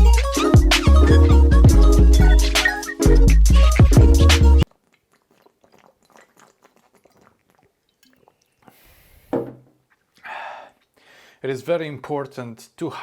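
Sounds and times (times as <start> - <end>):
gulp: 3.6 - 11.0
mouth and swallowing clicks: 3.8 - 8.8
breath out: 8.6 - 9.4, 10.2 - 11.4.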